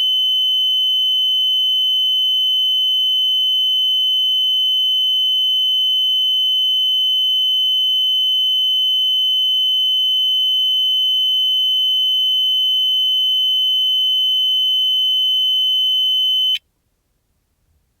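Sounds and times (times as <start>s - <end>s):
monitor flatline alarm tone: 12.7s - 16.6s.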